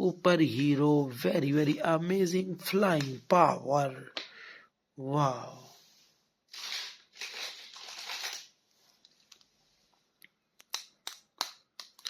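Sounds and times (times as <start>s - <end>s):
hands rustling plastic packaging: 6.5s - 9.6s, 10.6s - 12.0s.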